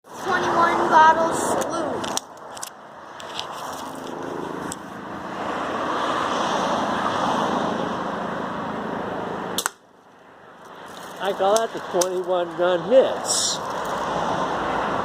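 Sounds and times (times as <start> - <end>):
vehicle passing by: 0.1 - 2.0, 3.0 - 9.6, 10.2 - 15.0
sharp click: 9.6 - 9.8.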